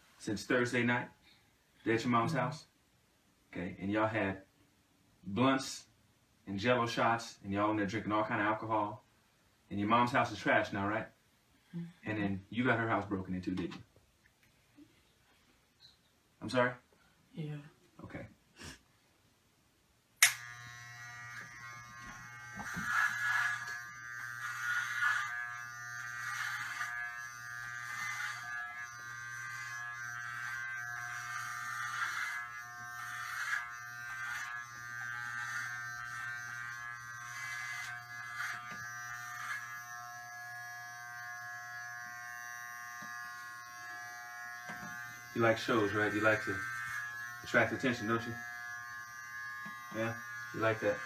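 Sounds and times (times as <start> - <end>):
hair clippers switch click: 20.2 - 20.6
hair clippers buzzing: 20.2 - 51.0.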